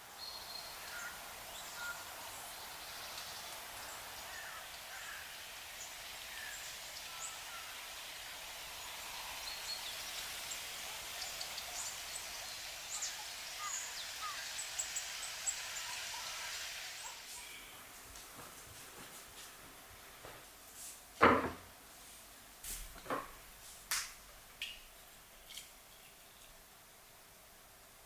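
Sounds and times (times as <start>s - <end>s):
small birds chirping: 0.0s - 18.0s, 24.6s - 26.7s
steady outdoor hiss: 0.0s - 28.0s.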